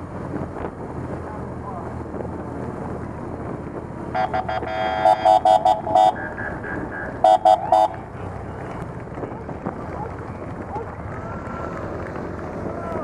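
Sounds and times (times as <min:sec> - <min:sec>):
traffic rumble: 0:00.0 - 0:13.0
wind: 0:00.0 - 0:13.0
motorcycle horn honks: 0:04.2 - 0:06.2, 0:07.2 - 0:08.0.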